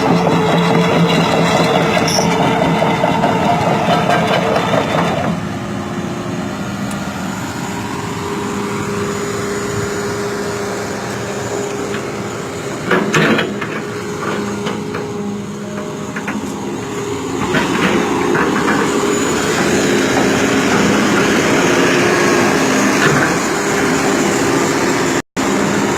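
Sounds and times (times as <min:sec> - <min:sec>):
excavator diesel engine running: 0:00.0 - 0:25.9.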